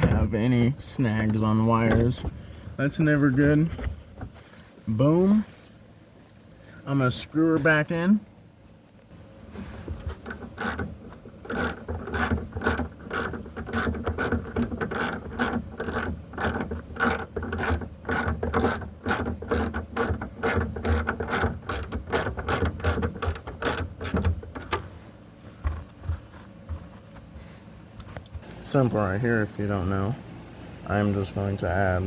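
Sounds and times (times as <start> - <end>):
ratcheting screwdriver clicking: 10.1 - 24.8.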